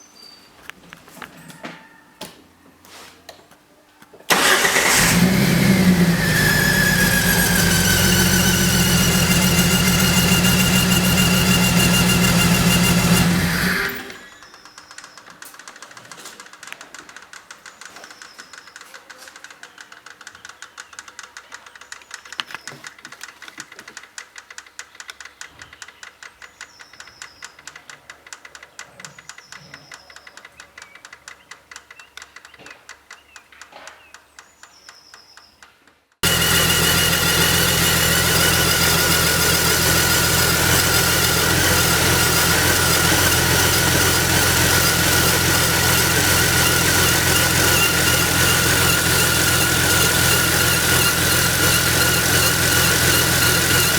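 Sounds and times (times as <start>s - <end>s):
engine running loud: 4.3s - 14.4s, 36.2s - 53.9s
rapid valvetrain ticking: 36.2s - 53.9s.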